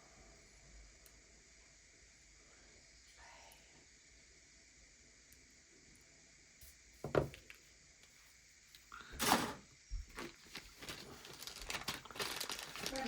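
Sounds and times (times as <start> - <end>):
knock on work surface: 7.0 - 7.3
loud rustle: 10.2 - 13.0.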